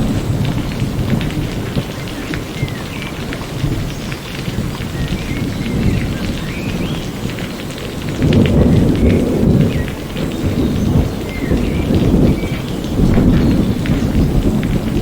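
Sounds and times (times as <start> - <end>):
low rolling thunder: 0.0 - 15.0
steady rain: 0.0 - 15.0.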